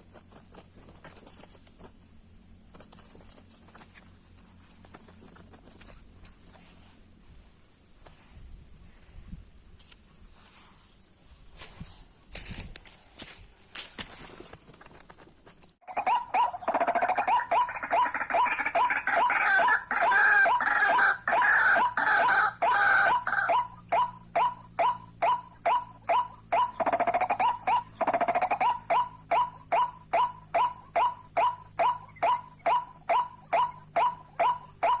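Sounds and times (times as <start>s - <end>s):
waterhens calling: 15.9s - 35.0s
harsh bird chattering: 23.5s - 35.0s.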